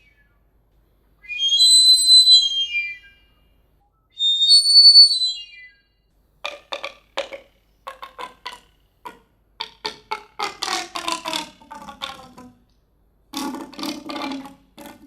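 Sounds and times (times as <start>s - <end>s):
falling whistle-like tone: 1.2s - 5.9s.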